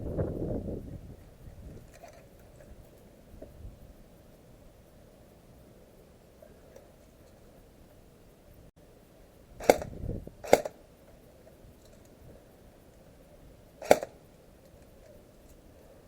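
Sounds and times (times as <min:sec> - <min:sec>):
airsoft gun shots: 0:09.6 - 0:10.8, 0:13.8 - 0:14.2.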